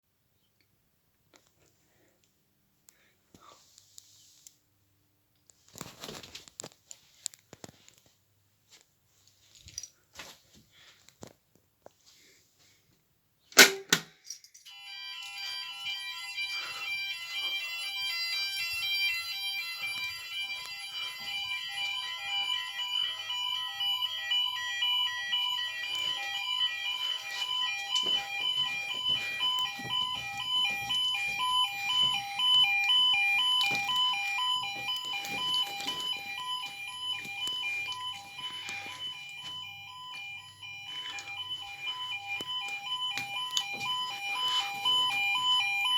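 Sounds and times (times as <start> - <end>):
two-tone fire alarm: 14.6 - 45.9.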